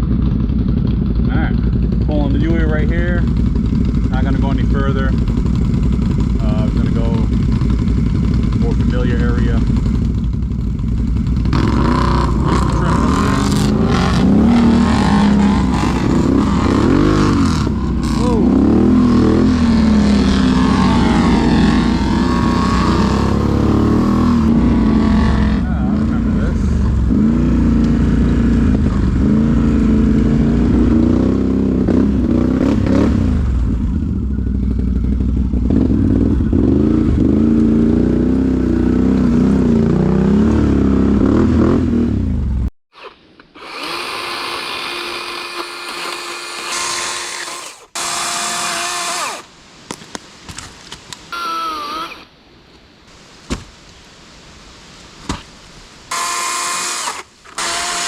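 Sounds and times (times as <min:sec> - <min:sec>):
atv engine running: 0:00.0 - 0:42.7
high whirring motor: 0:43.6 - 0:49.5, 0:51.4 - 0:52.3, 0:56.1 - 0:58.0.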